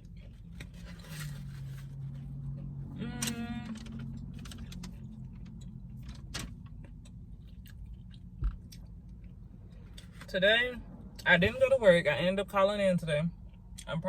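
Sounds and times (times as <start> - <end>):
low steady hum: 0.0 - 14.0
crunchy chewing: 4.1 - 10.2.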